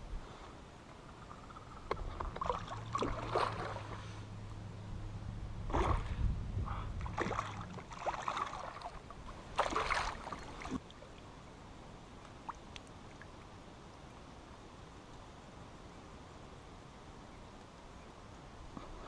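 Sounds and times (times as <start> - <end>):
steady low hum: 0.0 - 13.2
water splashing around canoe: 1.8 - 4.2, 5.6 - 6.2, 6.8 - 10.9.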